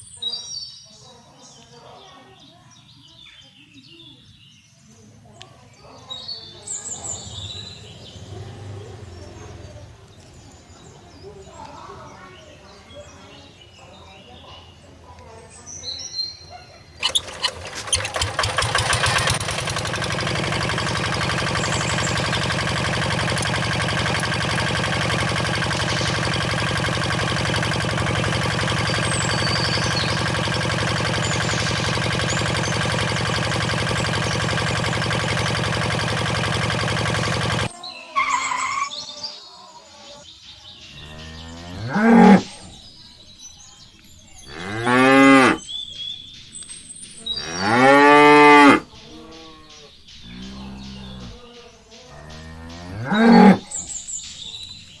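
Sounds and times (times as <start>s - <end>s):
steady drone: 17.0s - 37.7s
cattle mooing: 41.0s - 42.6s, 44.5s - 45.6s, 47.4s - 51.4s, 52.1s - 53.7s.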